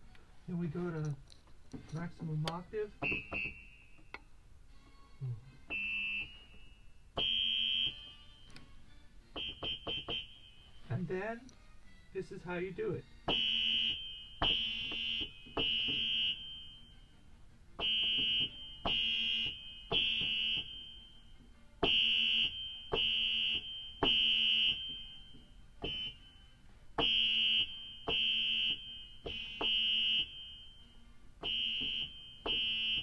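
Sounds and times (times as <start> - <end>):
high electronic keyboard note repeated: 9.4 - 11.4, 13.3 - 17.0, 17.8 - 26.4, 27.0 - 33.0.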